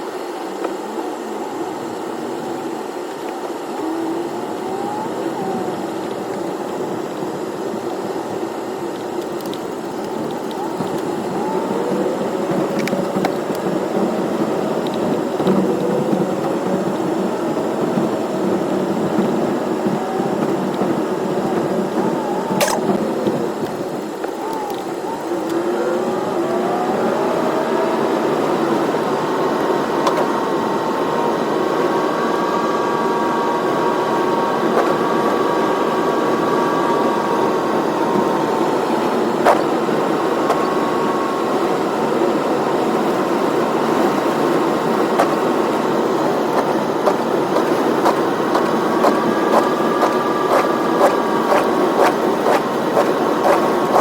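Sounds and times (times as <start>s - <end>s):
road noise: 0.0s - 54.0s
car engine accelerating: 1.2s - 54.0s.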